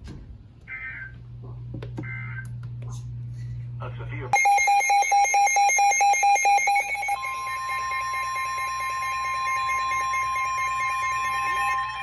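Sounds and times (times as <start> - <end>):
long steady alarm tone: 4.4 - 12.0
rapid beeping: 4.4 - 12.0.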